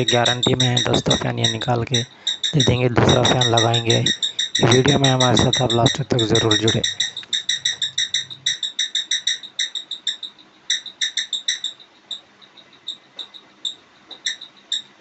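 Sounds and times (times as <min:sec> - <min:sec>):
faint low hum: 0:00.0 - 0:08.6
ceiling fan high-pitched chirps: 0:00.0 - 0:15.0.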